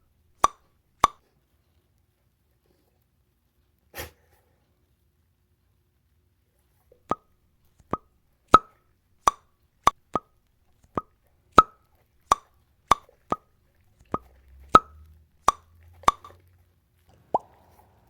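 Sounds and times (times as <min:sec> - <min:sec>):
bubbles popping: 0:12.3 - 0:16.4, 0:17.2 - 0:17.6.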